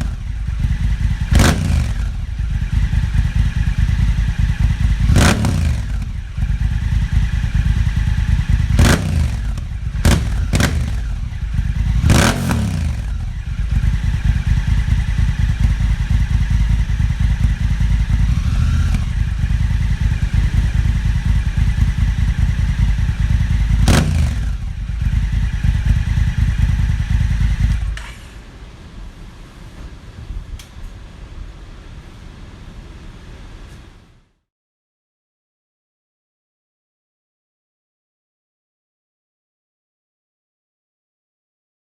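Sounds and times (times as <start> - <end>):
engine throttle blips: 0.0 - 28.4
motorcycle engine idling: 0.0 - 28.4.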